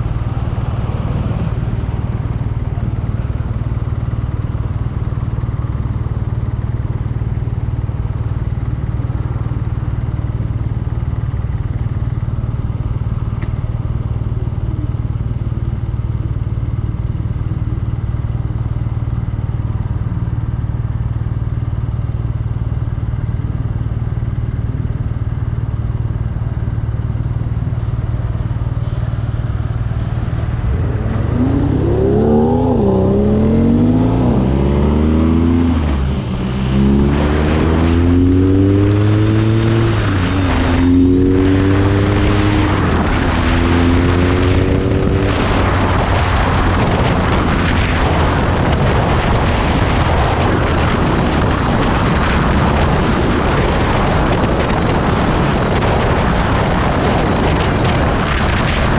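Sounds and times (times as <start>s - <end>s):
motorcycle engine running: 0.0s - 58.9s
wind buffeting microphone: 27.4s - 36.7s, 41.8s - 58.9s.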